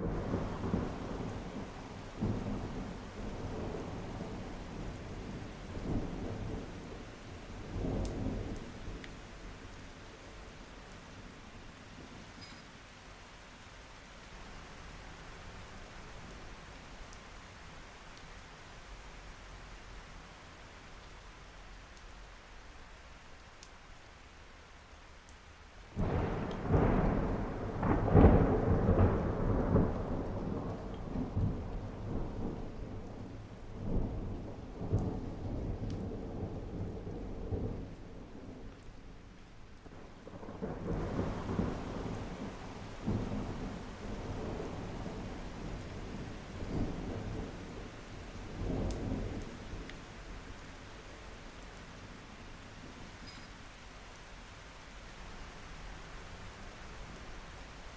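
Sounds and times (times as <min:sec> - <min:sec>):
thunder rumbling: 0:00.0 - 0:09.6, 0:26.0 - 0:50.6
rain falling: 0:00.0 - 0:57.9.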